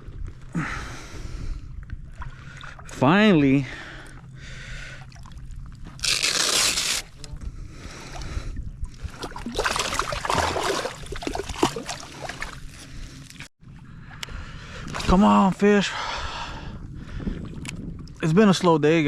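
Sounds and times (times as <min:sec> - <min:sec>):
water splashing and sloshing: 0:00.0 - 0:15.8.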